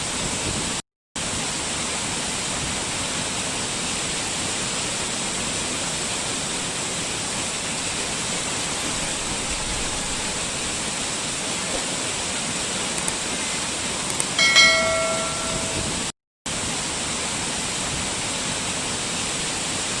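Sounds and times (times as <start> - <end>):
short ringing tone: 14.4 - 16.1.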